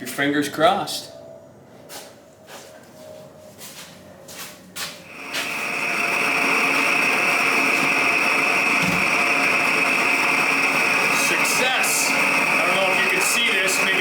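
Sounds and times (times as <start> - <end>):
blow torch hissing: 5.1 - 14.0.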